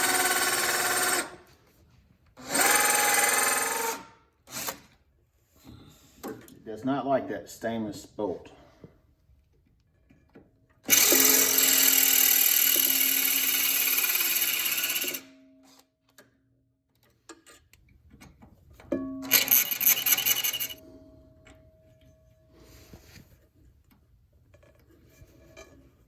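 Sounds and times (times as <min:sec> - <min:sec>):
cordless drill boring into steel: 0:00.0 - 0:01.4, 0:02.4 - 0:04.0, 0:10.9 - 0:15.3, 0:19.3 - 0:20.8.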